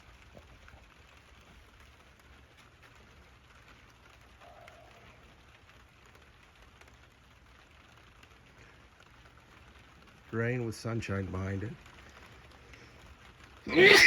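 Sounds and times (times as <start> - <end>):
light rain pattering: 0.0 - 14.0.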